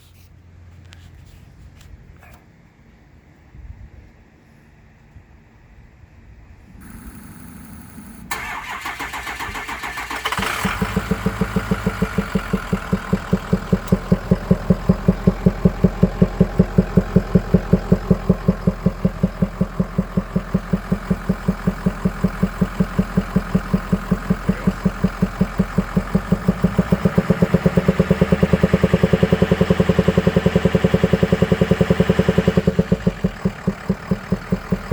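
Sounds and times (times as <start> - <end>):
engine running with rhythmic whooping: 6.6 - 34.9
pickup engine starting: 6.7 - 34.9.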